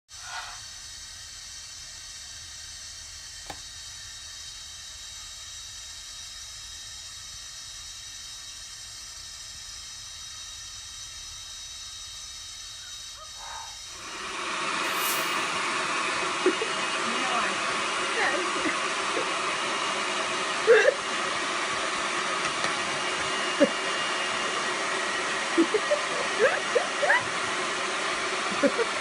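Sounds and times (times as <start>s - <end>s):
sharp click: 3.4s - 3.6s
hair dryer running: 3.4s - 3.7s, 13.9s - 29.0s.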